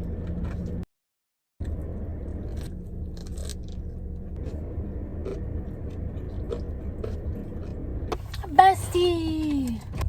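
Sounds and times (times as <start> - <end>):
car engine rumble inside cabin: 0.0 - 0.8, 1.6 - 10.0.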